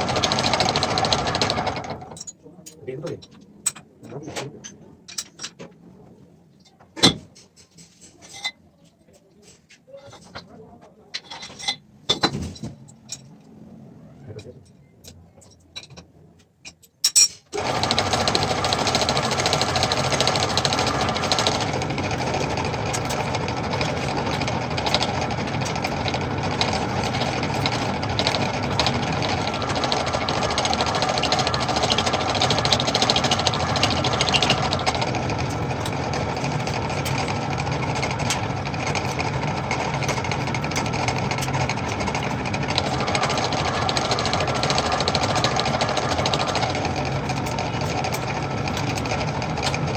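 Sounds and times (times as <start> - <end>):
metal lathe clattering: 0.0 - 2.2, 17.6 - 49.9.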